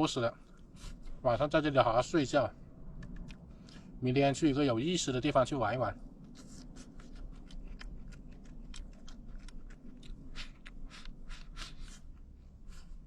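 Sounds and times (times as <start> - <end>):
person chewing crunchy food: 6.2 - 13.0.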